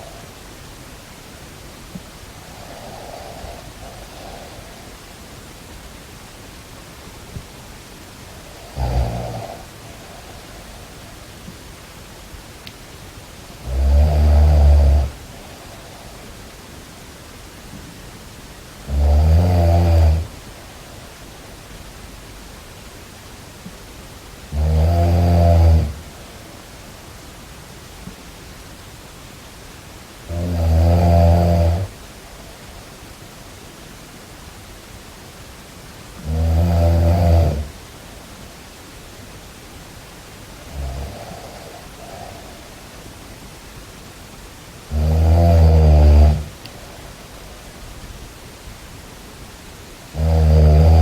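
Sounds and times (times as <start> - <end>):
steady hiss: 0.0 - 51.0
loud snoring: 2.5 - 4.9, 8.4 - 10.7, 13.6 - 15.8, 18.9 - 20.4, 24.5 - 26.1, 30.3 - 31.9, 36.2 - 37.8, 40.6 - 42.6, 44.9 - 46.6, 50.1 - 51.0.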